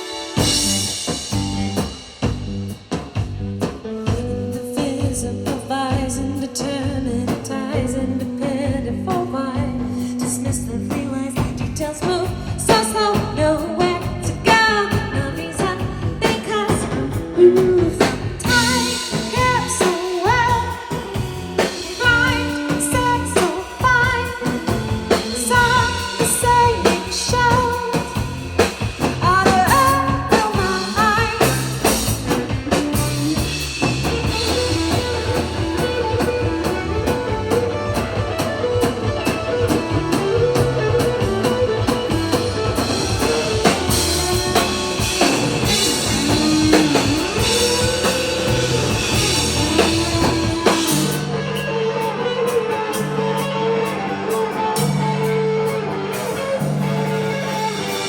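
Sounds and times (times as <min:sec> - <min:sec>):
drum kit: 0:00.0 - 0:58.0
guitar: 0:00.0 - 0:58.0
person singing: 0:04.4 - 0:28.4, 0:29.2 - 0:32.1.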